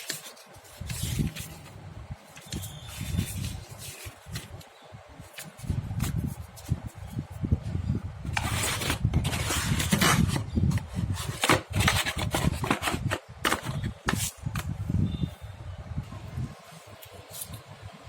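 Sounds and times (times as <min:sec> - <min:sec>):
hands scraping packaging: 0:00.0 - 0:07.2, 0:08.3 - 0:14.7.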